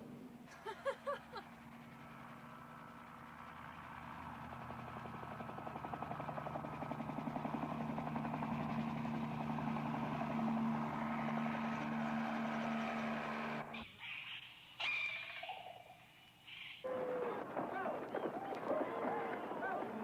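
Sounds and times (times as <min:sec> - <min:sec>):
motor humming: 0:00.5 - 0:13.8.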